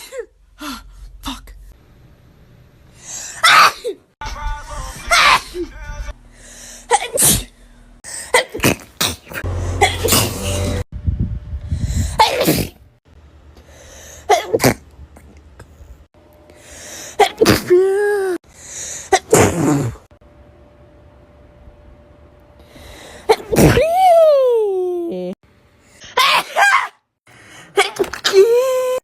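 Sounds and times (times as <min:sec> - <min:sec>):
person sneezing: 0:03.2 - 0:04.0, 0:12.1 - 0:12.8, 0:17.2 - 0:18.2, 0:23.3 - 0:23.9.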